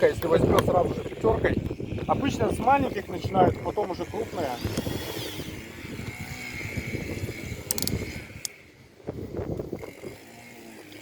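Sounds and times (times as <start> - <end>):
wind rumbling on microphone: 0.0 - 11.0
drill bit clicking and knocking: 7.6 - 8.6.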